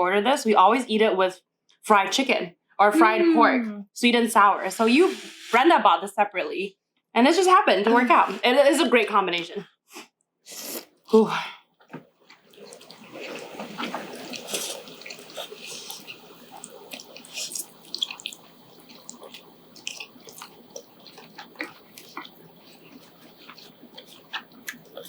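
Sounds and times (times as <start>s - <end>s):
noodles being slurped: 11.9s - 25.0s
chewing clicks: 12.3s - 25.0s.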